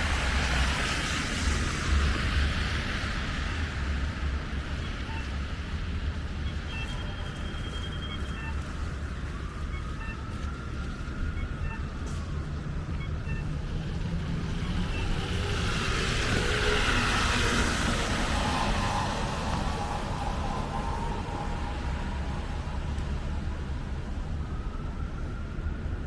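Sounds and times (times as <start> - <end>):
street traffic rumble: 0.0 - 26.0
tyres hissing on wet road: 14.8 - 22.8.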